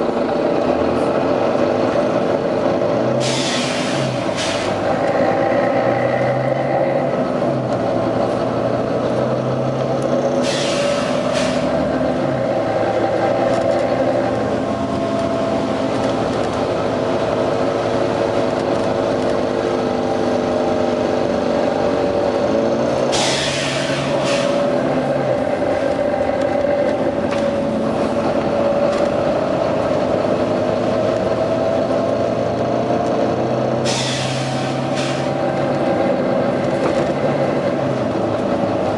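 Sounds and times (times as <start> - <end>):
bus engine running under load: 0.0 - 38.9
air hiss from bus: 3.2 - 4.8, 10.4 - 11.7, 23.1 - 24.6, 33.8 - 35.3.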